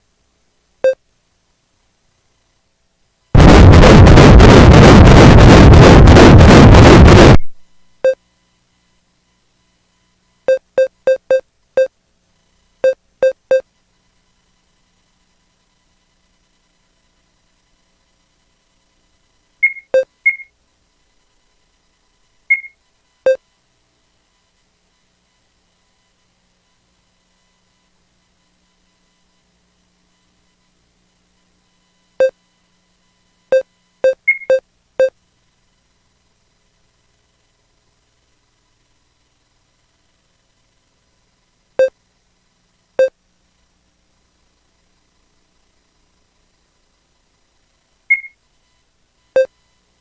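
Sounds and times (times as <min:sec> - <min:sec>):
short electronic beep: 0:19.6 - 0:20.5, 0:22.5 - 0:23.4, 0:33.5 - 0:35.1, 0:48.1 - 0:48.4.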